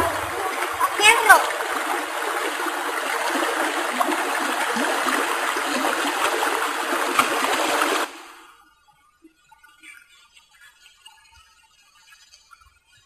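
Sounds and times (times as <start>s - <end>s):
river water rushing: 0.0s - 8.2s.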